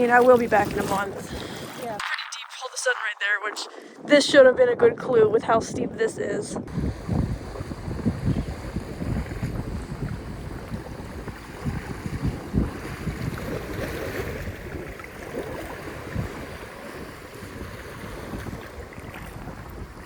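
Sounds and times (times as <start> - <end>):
wind gusting on microphone: 0.0 - 20.0
waves washing on beach: 6.7 - 20.0.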